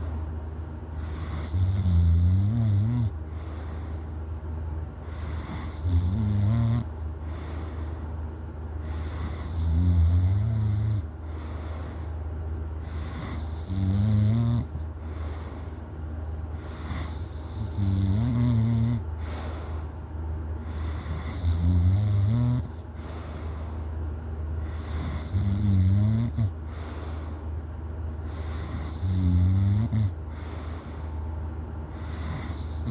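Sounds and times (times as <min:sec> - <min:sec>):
steady low hum: 0:00.0 - 0:32.9
person snoring: 0:01.1 - 0:03.2, 0:05.3 - 0:06.9, 0:09.0 - 0:11.1, 0:13.0 - 0:14.8, 0:16.8 - 0:19.0, 0:20.9 - 0:22.8, 0:24.9 - 0:26.5, 0:28.5 - 0:30.2, 0:32.0 - 0:32.9.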